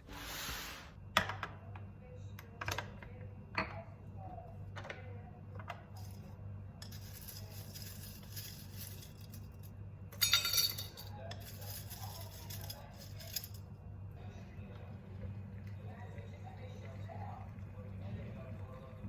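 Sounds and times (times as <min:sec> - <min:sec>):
tableware clinking: 0:10.1 - 0:13.6.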